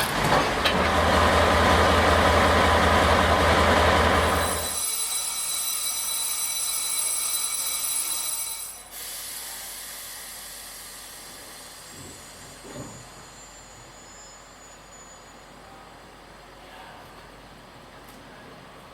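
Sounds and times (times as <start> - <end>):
hiss of air: 9.0 - 13.3
high whistling tones: 13.2 - 15.8.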